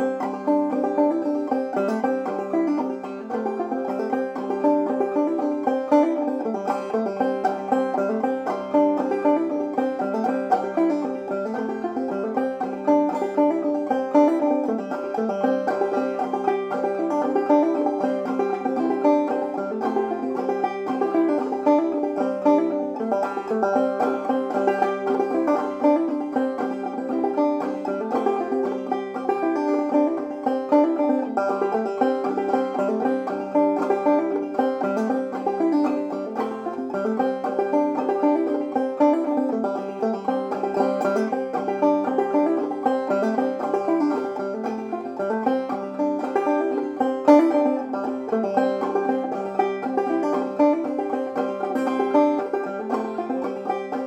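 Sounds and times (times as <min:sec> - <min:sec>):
banjo plucked notes: 0:00.0 - 0:54.0.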